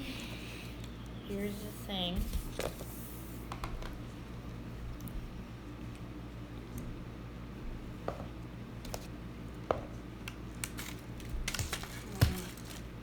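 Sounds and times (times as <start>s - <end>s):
packaging crinkling: 10.3s - 13.0s.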